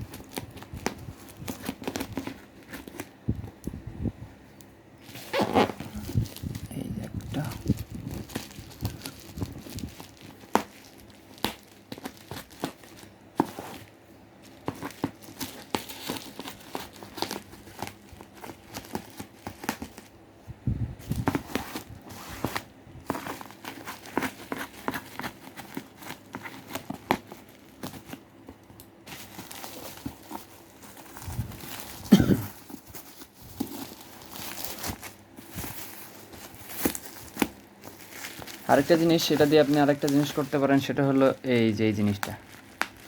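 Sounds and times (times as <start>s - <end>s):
packaging crinkling and tearing: 0.0s - 3.5s, 5.0s - 20.2s, 21.0s - 43.0s.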